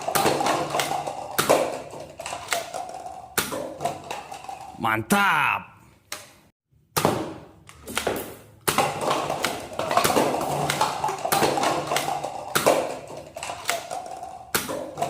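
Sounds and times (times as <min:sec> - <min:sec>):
plastic toy clicks and knocks: 0:00.0 - 0:04.8, 0:08.7 - 0:15.0.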